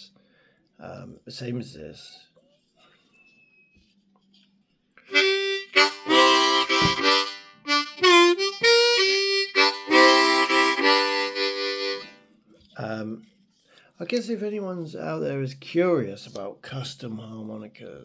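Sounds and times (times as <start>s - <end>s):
harmonica riffs: 5.0s - 12.3s.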